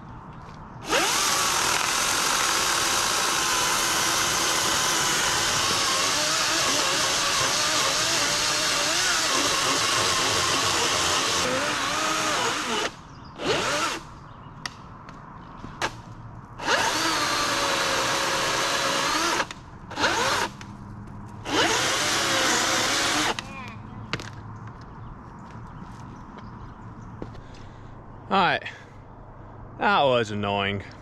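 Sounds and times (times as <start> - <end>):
electric saw cutting logs: 0.8 - 14.1, 16.6 - 20.6, 21.4 - 23.5.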